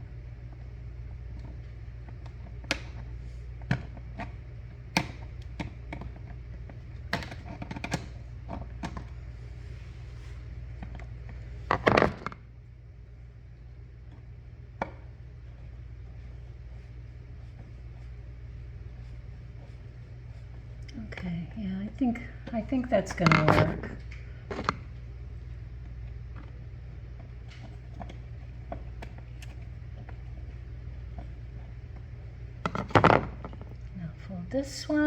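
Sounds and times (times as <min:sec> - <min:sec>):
steady low hum: 0:00.0 - 0:35.0
small clicks and taps: 0:01.3 - 0:09.1.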